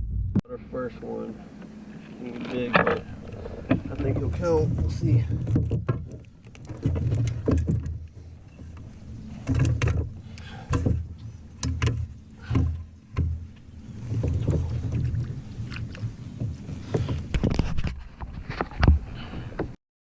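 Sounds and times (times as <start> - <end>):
knocks and bumps on kayak: 2.7 - 8.0, 9.3 - 19.8.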